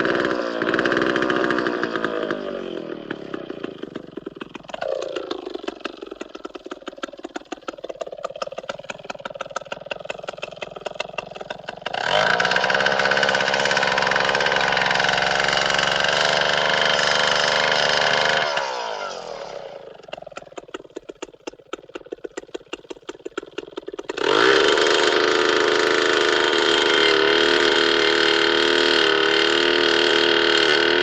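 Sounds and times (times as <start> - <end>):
chainsaw engine idling and revving: 0.0 - 31.0.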